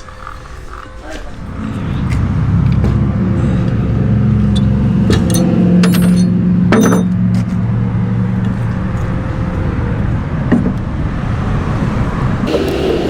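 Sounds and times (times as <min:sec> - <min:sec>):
traffic noise: 0:00.0 - 0:13.0
vehicle engine idling: 0:00.0 - 0:13.0
ringing metal clank: 0:04.6 - 0:07.2.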